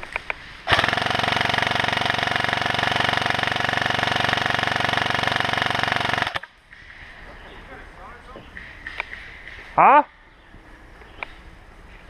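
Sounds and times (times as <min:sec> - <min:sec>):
airsoft gun full-auto burst: 0:00.7 - 0:06.5.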